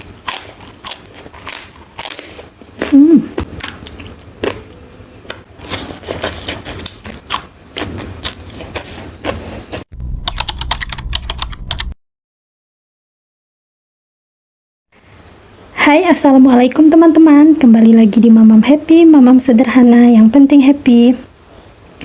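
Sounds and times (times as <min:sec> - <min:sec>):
crisp food crunching: 0:00.0 - 0:09.8
low hum: 0:09.9 - 0:12.0.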